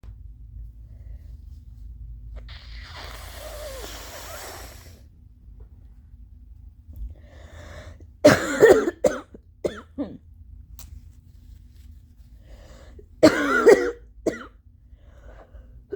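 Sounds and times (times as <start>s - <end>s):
person blowing nose: 2.4s - 5.0s
person coughing: 8.2s - 10.2s, 13.2s - 14.6s.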